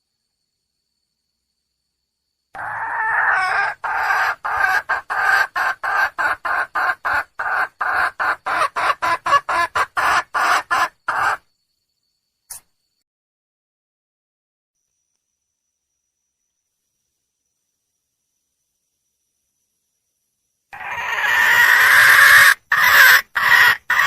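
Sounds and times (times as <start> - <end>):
hen clucking calls: 2.6 - 11.4, 20.8 - 24.0.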